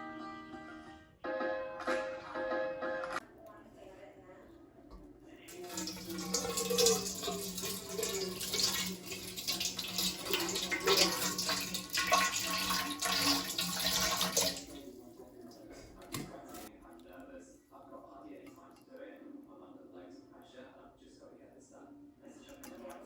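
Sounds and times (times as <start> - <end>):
tap water splashing into sink: 4.9 - 14.9, 16.0 - 16.7.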